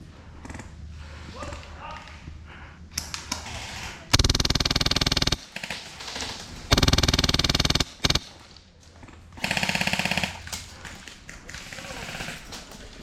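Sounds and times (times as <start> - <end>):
airsoft rifle firing bursts: 4.1 - 8.5, 9.4 - 10.9, 11.6 - 12.6.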